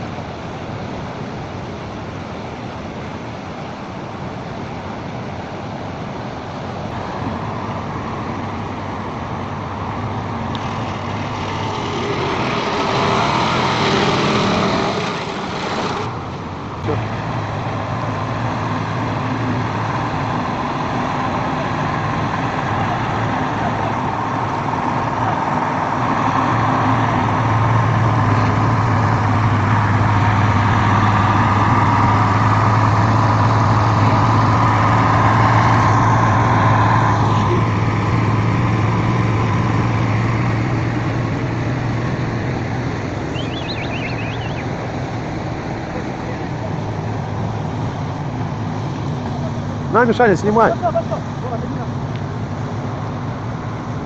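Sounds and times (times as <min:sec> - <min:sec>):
heavy truck engine running: 0:00.0 - 0:54.0.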